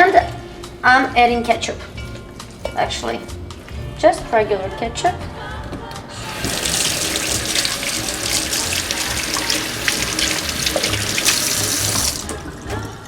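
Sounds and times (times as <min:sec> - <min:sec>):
background music: 0:00.0 - 0:13.0
kitchen tap running: 0:06.2 - 0:12.6.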